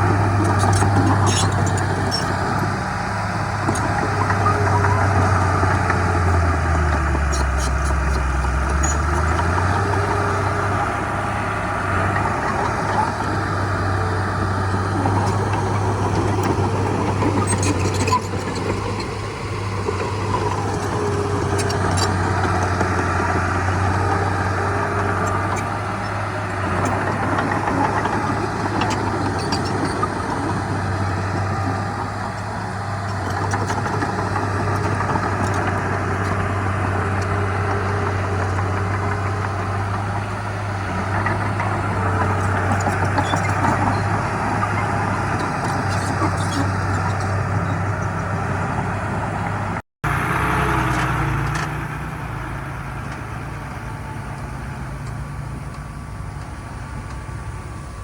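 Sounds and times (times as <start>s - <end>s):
heavy diesel machinery engine: 0.0s - 58.0s.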